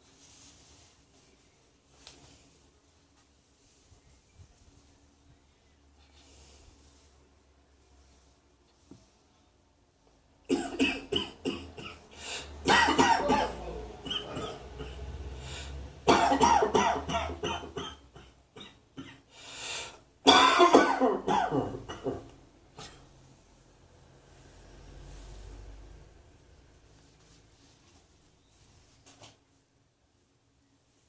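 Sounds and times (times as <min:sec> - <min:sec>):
person coughing: 0:10.5 - 0:15.1, 0:16.1 - 0:19.3, 0:20.3 - 0:23.0.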